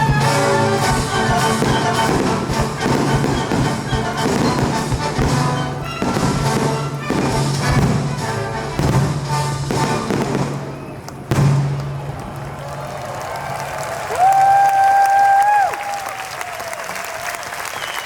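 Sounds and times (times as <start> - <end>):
orchestral music: 0.0 - 12.2
fireworks bangs and crackles: 0.0 - 12.8.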